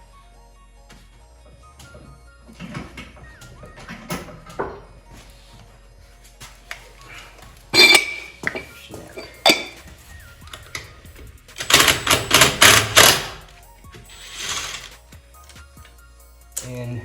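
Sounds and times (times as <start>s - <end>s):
metal tools clinking: 7.7s - 9.9s, 11.6s - 13.4s, 14.1s - 15.0s.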